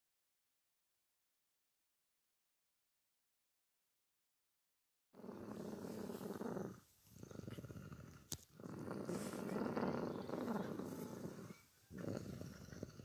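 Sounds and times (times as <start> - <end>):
man snoring: 5.2 - 13.0.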